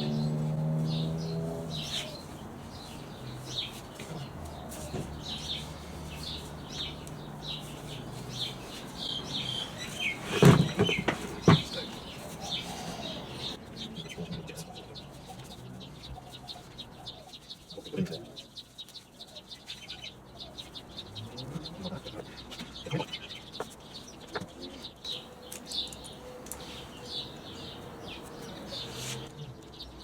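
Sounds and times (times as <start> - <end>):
small birds chirping: 0.0 - 30.0
loud knocks: 10.1 - 11.9.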